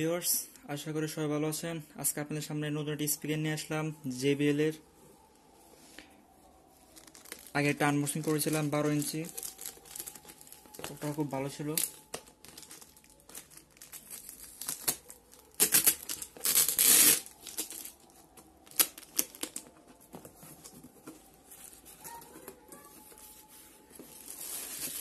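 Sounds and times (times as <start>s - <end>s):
packaging tearing and crinkling: 6.9s - 19.7s, 24.1s - 25.0s.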